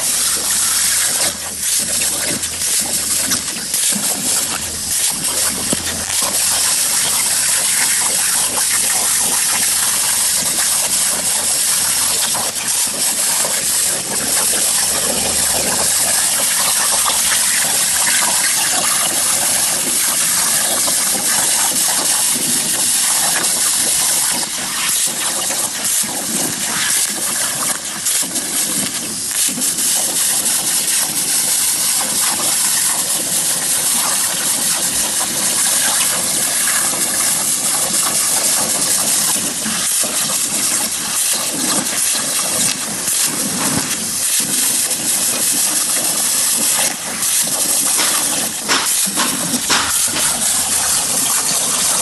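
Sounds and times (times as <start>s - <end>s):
plasma torch cutting metal: 0.0s - 52.0s.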